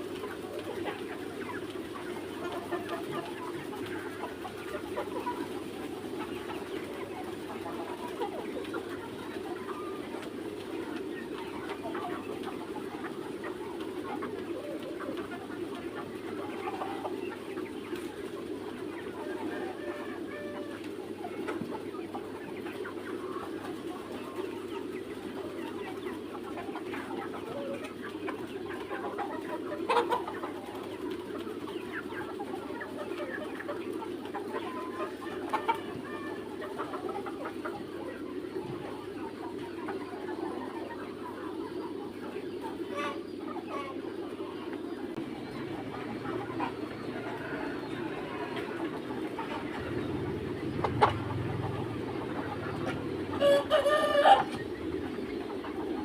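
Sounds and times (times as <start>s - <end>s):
chickens clucking and calling: 0.0s - 56.0s.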